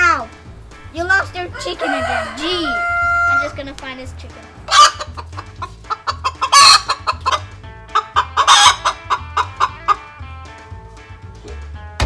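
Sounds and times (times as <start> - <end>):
background music with low beat: 0.0 - 12.0
chickens clucking and squawking: 1.4 - 10.3.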